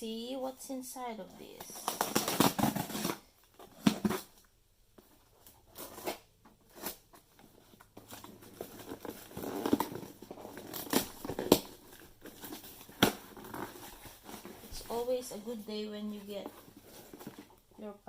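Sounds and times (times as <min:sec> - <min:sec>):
tape and packaging tearing: 0:01.7 - 0:03.2, 0:05.4 - 0:07.0, 0:08.0 - 0:15.1
packaging rustling: 0:01.8 - 0:15.1, 0:16.2 - 0:17.7.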